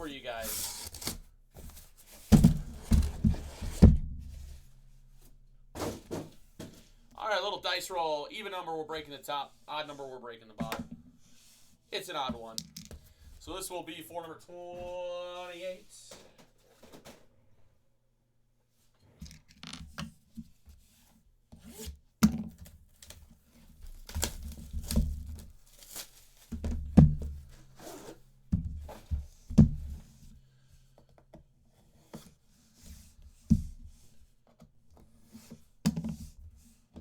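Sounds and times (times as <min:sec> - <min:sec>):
packaging tearing and crinkling: 0:00.5 - 0:01.3, 0:23.8 - 0:26.5.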